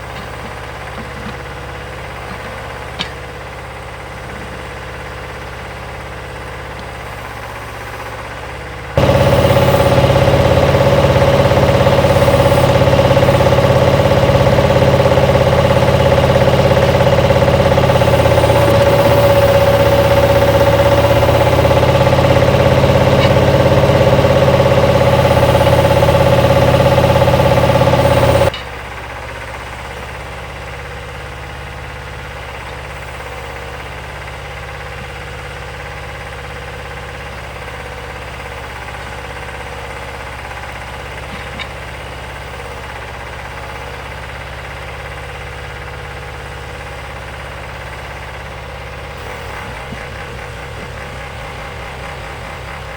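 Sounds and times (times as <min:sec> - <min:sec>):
skid-steer loader engine running: 0:00.0 - 0:52.9
high whine: 0:09.0 - 0:28.7, 0:49.1 - 0:52.9.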